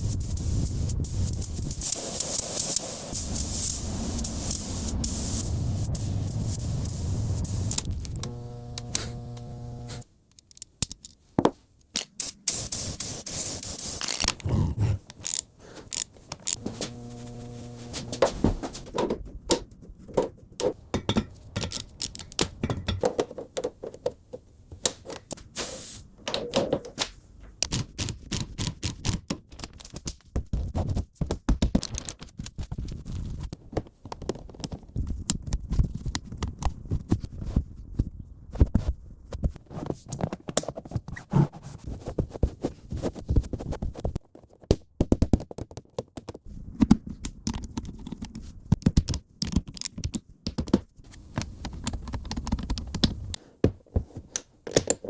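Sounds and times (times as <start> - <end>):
hiss: 0.0 - 7.8, 25.6 - 26.1
short low hum: 8.2 - 10.0, 16.6 - 18.8
hand tools knocking and tapping: 19.0 - 25.3.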